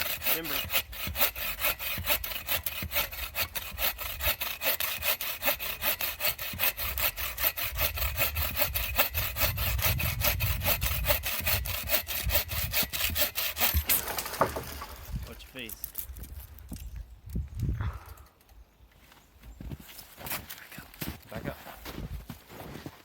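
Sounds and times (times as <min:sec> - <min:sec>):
hand saw cutting wood: 0:00.0 - 0:15.4.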